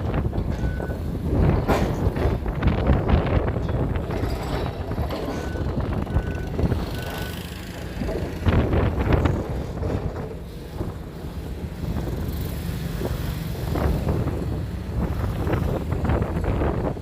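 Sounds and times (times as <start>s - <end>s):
metallic clanks and knocks: 0.0s - 11.0s
excavator engine rumbling: 0.0s - 17.0s
wind noise on microphone: 0.0s - 17.0s.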